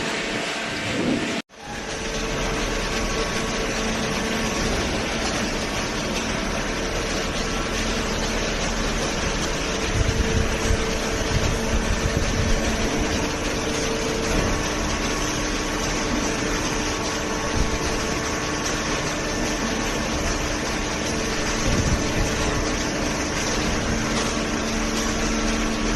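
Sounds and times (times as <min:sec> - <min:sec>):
hydraulic baler hum and hiss: 0:00.0 - 0:25.9.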